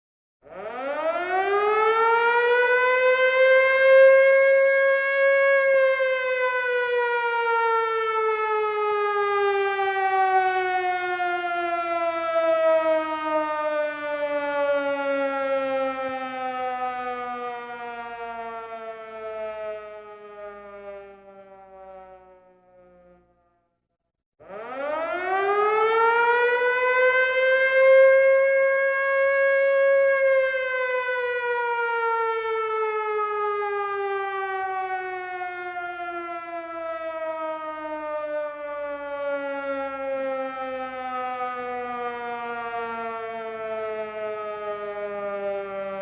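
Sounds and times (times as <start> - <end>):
civil defense siren winding: 0.4 - 23.7, 24.4 - 46.0.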